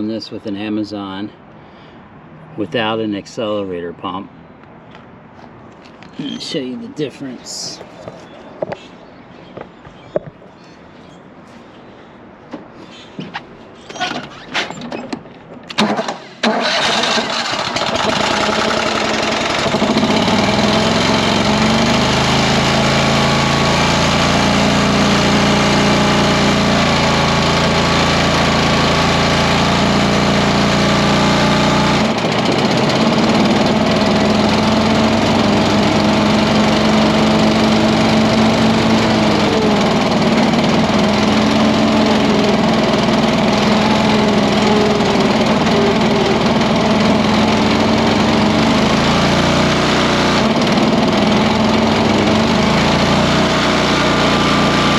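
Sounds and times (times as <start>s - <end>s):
engine starter cranking: 15.7s - 21.9s
mower engine running: 15.8s - 54.9s.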